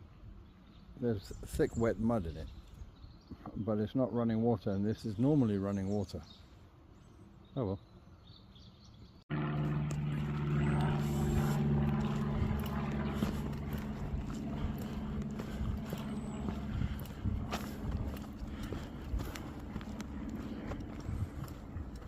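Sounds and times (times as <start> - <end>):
engine droning: 9.3 - 22.0
footsteps on forest ground: 9.3 - 22.0
low steady rumble: 9.3 - 22.0
crackles underfoot: 9.9 - 22.0.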